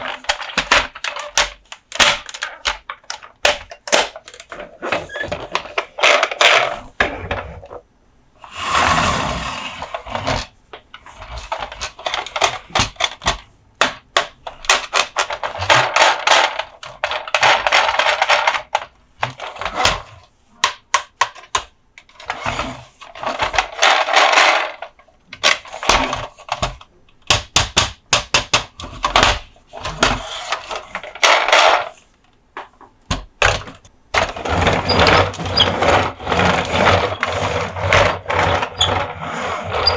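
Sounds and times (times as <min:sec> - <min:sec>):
taps and clicks on toy trucks: 0:20.6 - 0:22.1, 0:25.4 - 0:29.4
scratching noise: 0:34.2 - 0:39.9.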